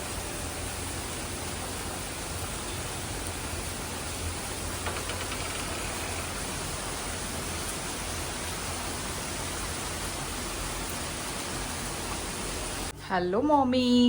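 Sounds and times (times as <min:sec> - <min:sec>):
heavy rain pouring: 0:00.0 - 0:12.9.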